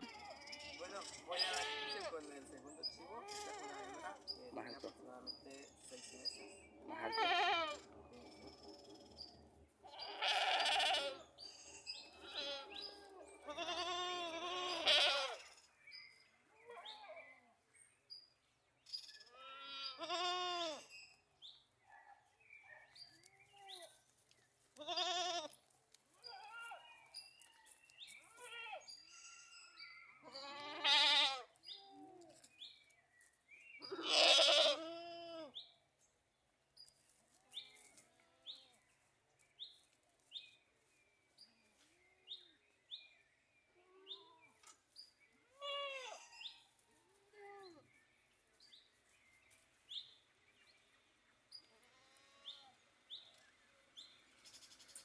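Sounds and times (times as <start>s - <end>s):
goats bleating: 0.0s - 4.2s, 5.9s - 8.1s, 9.8s - 15.5s, 19.4s - 20.9s, 24.8s - 25.6s, 30.2s - 31.5s, 33.9s - 35.5s.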